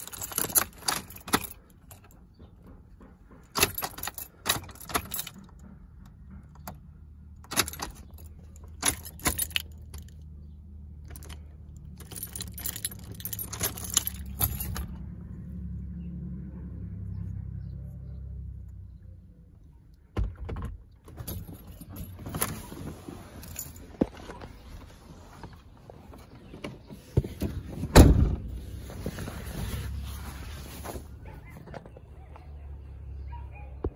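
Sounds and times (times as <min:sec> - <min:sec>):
metallic jingling: 0:00.0 - 0:05.7, 0:07.4 - 0:15.4, 0:21.1 - 0:24.7.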